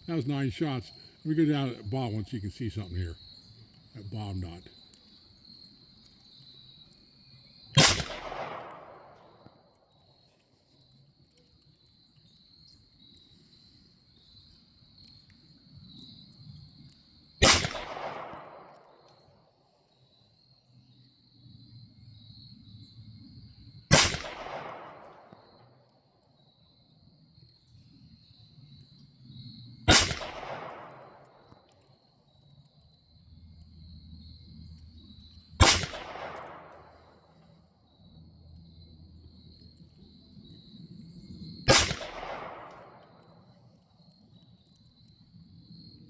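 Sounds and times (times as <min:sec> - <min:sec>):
crickets chirping: 0:00.0 - 0:46.0
pistol shots with echo: 0:07.8 - 0:09.4, 0:17.4 - 0:18.9, 0:23.9 - 0:25.4, 0:29.9 - 0:31.4, 0:35.6 - 0:37.0, 0:41.7 - 0:43.2.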